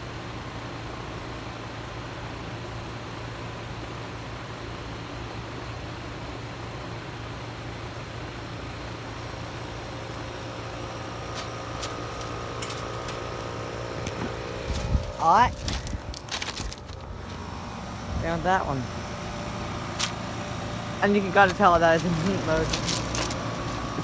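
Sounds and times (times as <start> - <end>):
heat pump fan noise: 0.0 - 24.0
low hum: 9.4 - 24.0.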